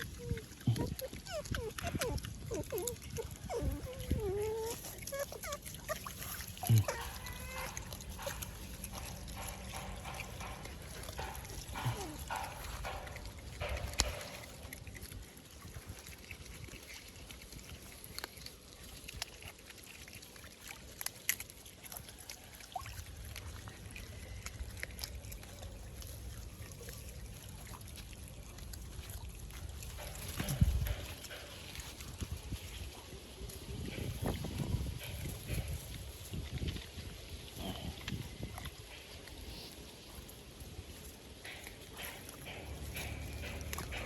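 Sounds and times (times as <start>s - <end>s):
otter squeaking and grunting: 0.0s - 14.4s, 41.5s - 44.0s.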